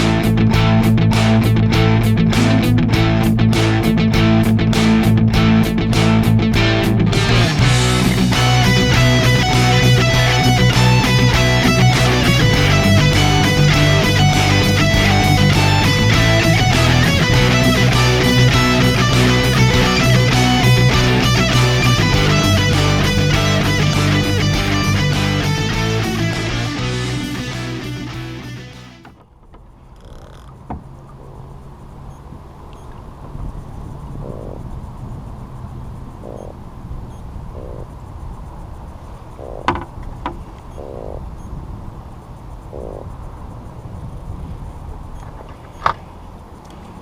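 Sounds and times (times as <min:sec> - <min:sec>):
rock music with electric guitar: 0:00.0 - 0:29.2
fish grunting croaks: 0:29.8 - 0:31.6, 0:32.8 - 0:38.0, 0:39.3 - 0:41.6, 0:42.6 - 0:43.2
sharp clicks: 0:45.1 - 0:46.9.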